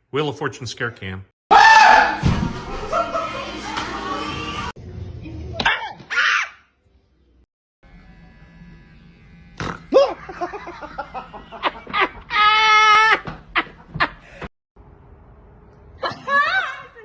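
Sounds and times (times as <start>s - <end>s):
person screaming: 1.5s - 2.2s
person squealing cries: 12.3s - 13.2s.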